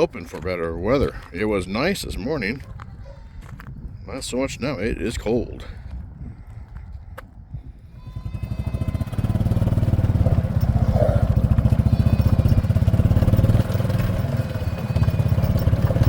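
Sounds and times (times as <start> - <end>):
engine idling: 8.2 - 16.0
vehicle engine starting: 8.4 - 16.0.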